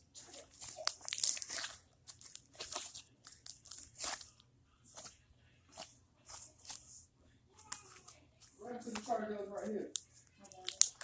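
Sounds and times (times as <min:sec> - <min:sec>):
slime crackling and popping: 0:00.2 - 0:04.4, 0:09.9 - 0:11.0.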